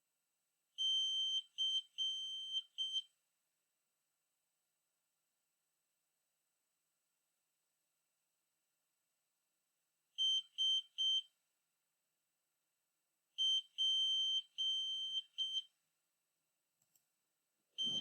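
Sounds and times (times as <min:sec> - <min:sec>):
piezo buzzer beeping morse code: 0:17.8 - 0:18.0.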